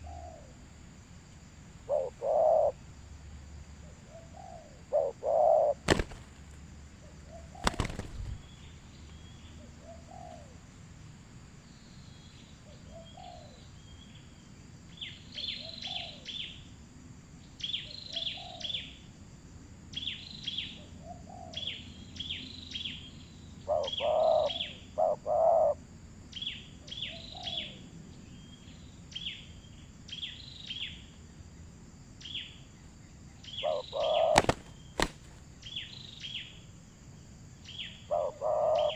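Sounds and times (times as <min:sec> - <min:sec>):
bird calling low note: 0:37.8 - 0:38.9.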